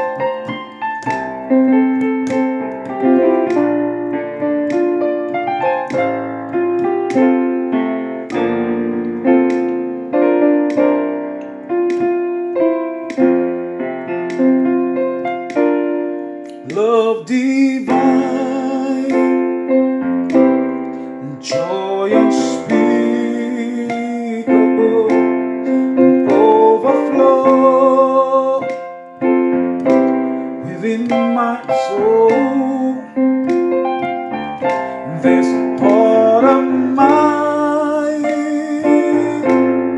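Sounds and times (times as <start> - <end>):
gospel piano chords: 0.0 - 39.9
wordless melody line: 0.0 - 39.9.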